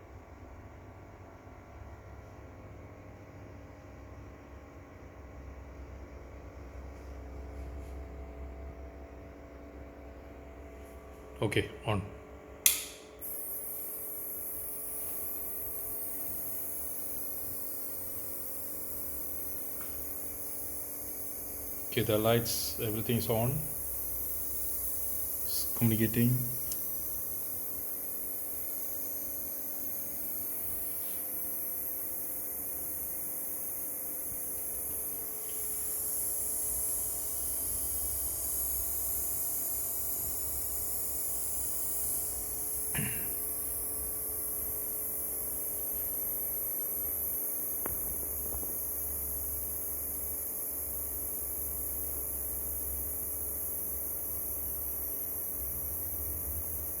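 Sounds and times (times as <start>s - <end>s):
low electrical hum with hiss: 0.0s - 57.0s
short click: 12.6s - 13.1s.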